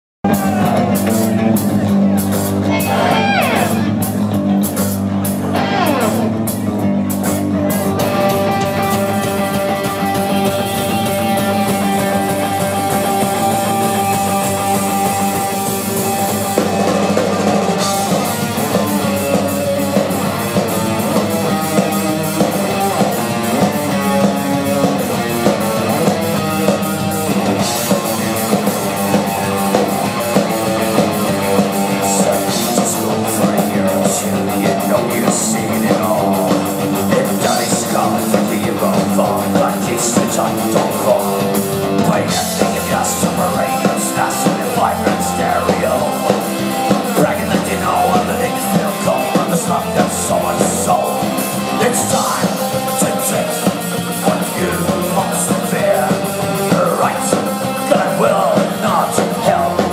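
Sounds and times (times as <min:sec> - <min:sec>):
drums: 0:00.0 - 0:59.9
distorted electric guitars: 0:00.2 - 0:59.9.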